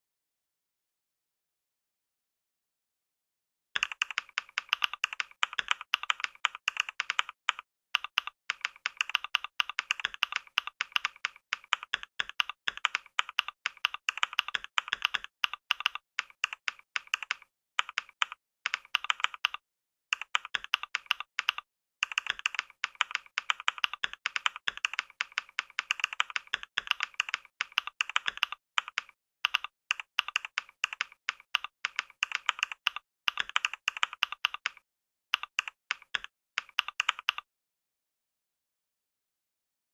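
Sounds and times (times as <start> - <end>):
keyboard key clicks: 35.4 - 37.4.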